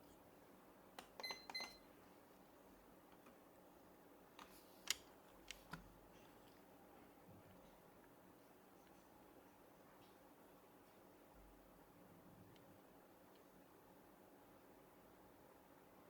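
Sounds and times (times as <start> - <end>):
kitchen timer beeps: 1.2 - 1.9.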